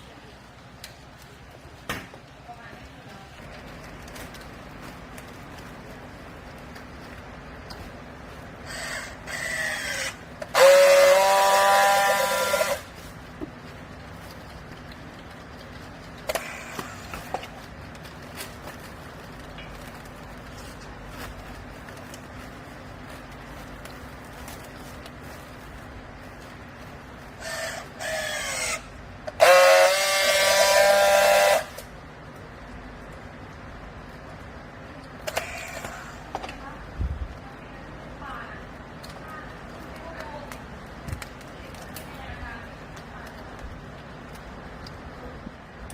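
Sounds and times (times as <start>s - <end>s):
horn blasts: 10.5s - 12.9s, 29.3s - 31.9s.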